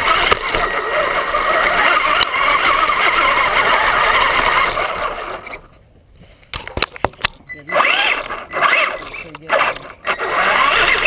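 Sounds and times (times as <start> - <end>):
rc car motor running: 0.0 - 5.7, 7.5 - 11.0
tyres on dirt: 0.0 - 11.0.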